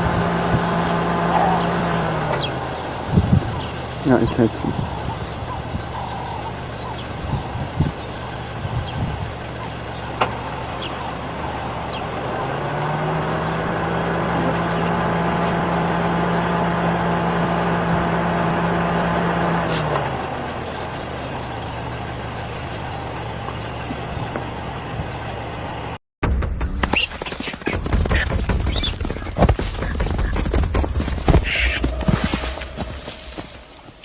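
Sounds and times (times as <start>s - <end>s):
insect chirping: 0.0s - 26.0s
vehicle engine humming: 0.0s - 34.0s.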